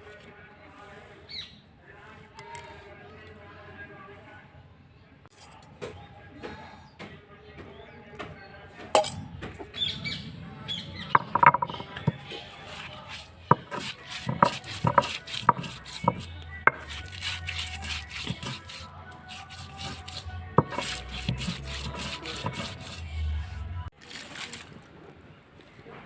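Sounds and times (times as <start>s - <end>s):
kitchen utensils clinking: 9.0s - 9.8s, 11.0s - 23.3s.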